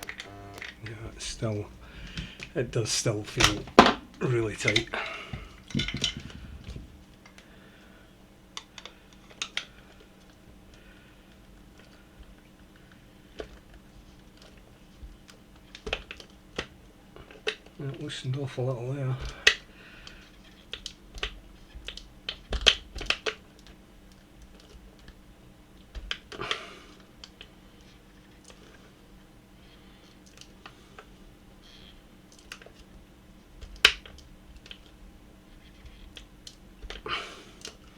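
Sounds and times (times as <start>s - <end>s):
faint steady hum: 0.0s - 37.9s
plastic clicks and knocks: 3.4s - 7.4s.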